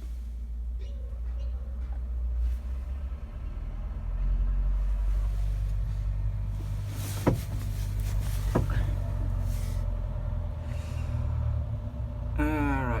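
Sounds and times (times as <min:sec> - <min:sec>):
vehicle engine running: 0:00.0 - 0:13.0
sharp knocks: 0:07.0 - 0:09.0.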